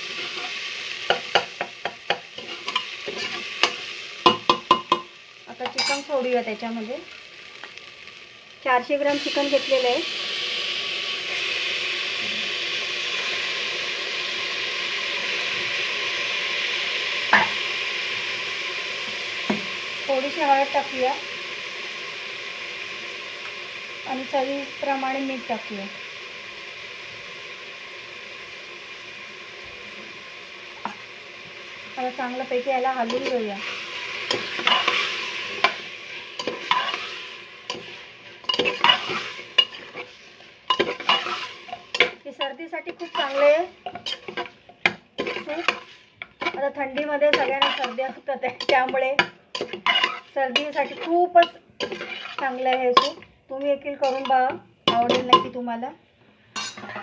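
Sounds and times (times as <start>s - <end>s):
utensil scraping a pan: 0.0s - 5.0s, 5.7s - 6.2s, 33.0s - 53.4s, 54.0s - 55.4s
chicken sizzling in hot oil: 0.0s - 55.8s.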